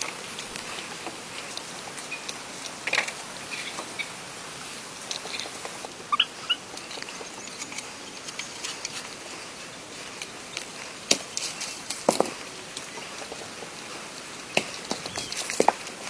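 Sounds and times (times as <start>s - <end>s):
steady hiss: 0.0s - 16.0s
high chirps: 6.1s - 8.7s.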